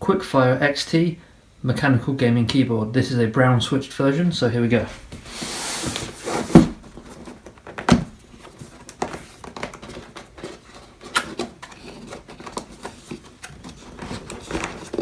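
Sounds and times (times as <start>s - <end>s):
thump on cardboard box: 5.1s - 7.1s, 7.7s - 8.2s.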